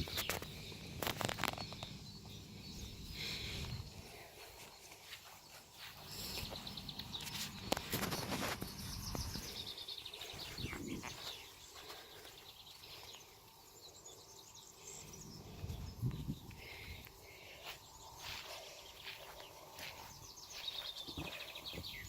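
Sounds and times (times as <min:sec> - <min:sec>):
bird chirping trill: 0:06.0 - 0:17.0, 0:17.9 - 0:22.0.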